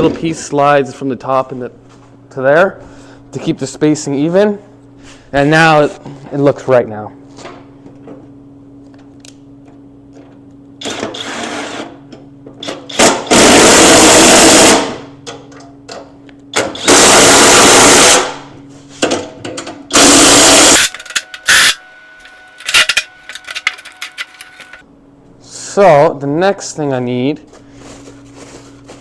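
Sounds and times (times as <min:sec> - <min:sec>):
power driver driving bolts: 0:19.9 - 0:24.8.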